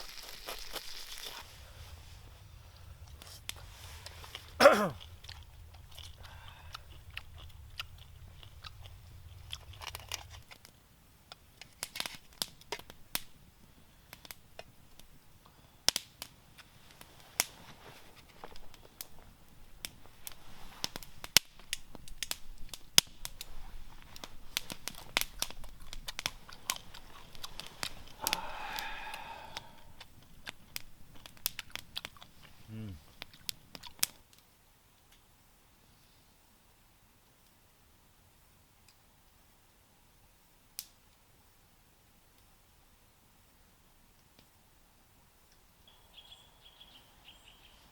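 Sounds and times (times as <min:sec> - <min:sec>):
low hum: 0:01.4 - 0:11.8
sharp clicks and crunches: 0:03.0 - 0:13.3, 0:15.9 - 0:28.4.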